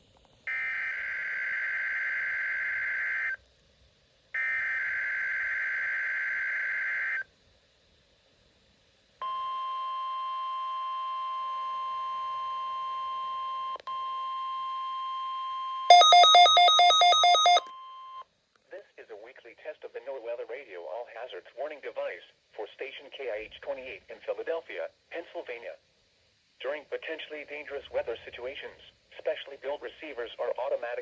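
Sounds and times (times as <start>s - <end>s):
rapid pulsing beep: 15.9s - 17.6s
steady warning alarm tone: 15.9s - 17.7s.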